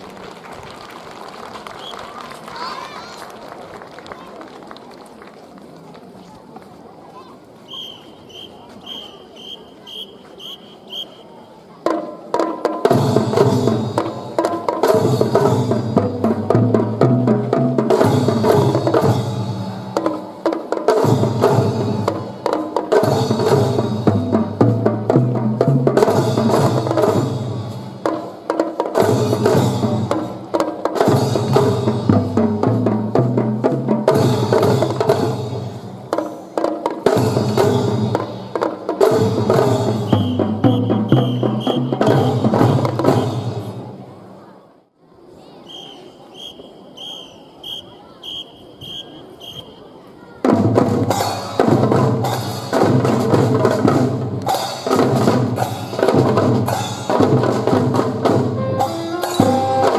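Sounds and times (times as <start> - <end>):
drum and fife band playing: 11.8 - 44.0, 50.4 - 59.9
drum beats: 11.8 - 44.0, 50.4 - 59.9.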